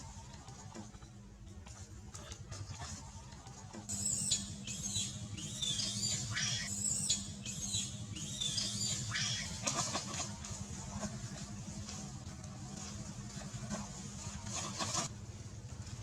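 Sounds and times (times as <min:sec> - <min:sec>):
steady low hum: 0:00.0 - 0:16.0
baby monkey squealing: 0:03.9 - 0:10.2.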